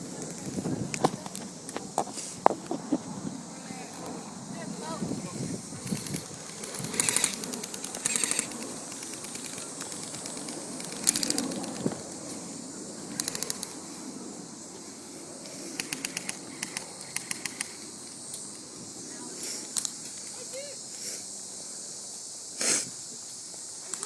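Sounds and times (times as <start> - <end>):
movement noise: 0.0 - 21.3
wind: 0.0 - 24.0
airsoft guns automatic bursts: 5.8 - 11.8, 13.1 - 13.7, 15.7 - 17.8.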